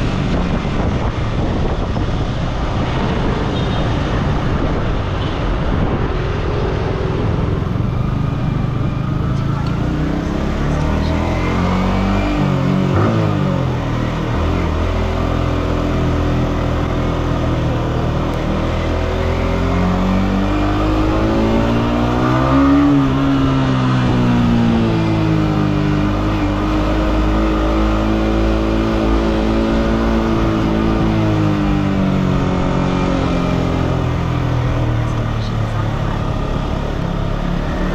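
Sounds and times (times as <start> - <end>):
wind rumble: 0.0 - 15.3
motorcycle engine accelerating: 0.0 - 37.9
wind and road noise: 0.0 - 37.9.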